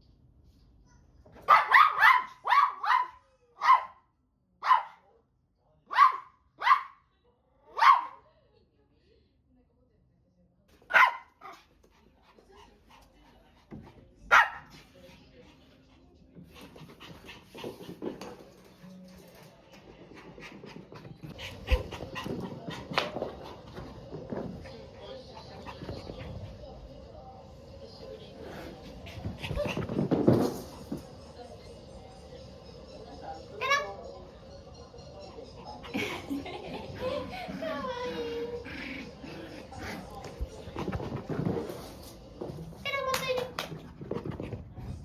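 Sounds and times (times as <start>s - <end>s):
small dog barking: 1.4s - 4.0s, 4.6s - 5.0s, 5.9s - 7.0s, 7.7s - 8.2s, 10.9s - 11.6s, 14.3s - 14.8s
dog panting: 11.5s - 14.2s, 14.8s - 24.1s.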